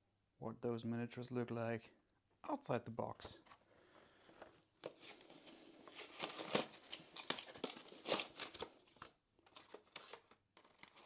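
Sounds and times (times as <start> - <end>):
plastic packaging crinkling: 4.8 - 11.0.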